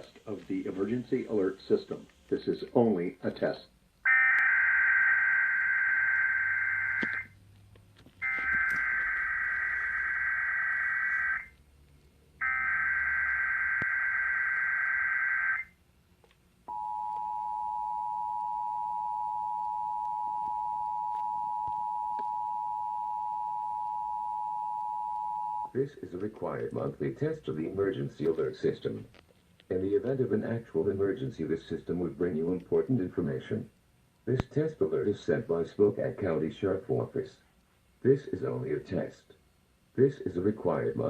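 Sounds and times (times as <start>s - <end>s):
two-tone attention signal: 16.7s - 25.7s.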